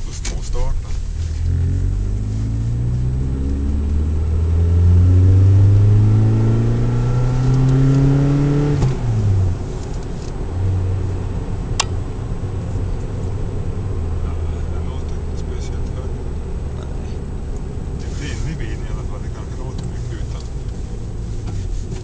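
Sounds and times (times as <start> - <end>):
car engine accelerating: 0.0 - 22.0
sharp click: 11.8 - 12.1.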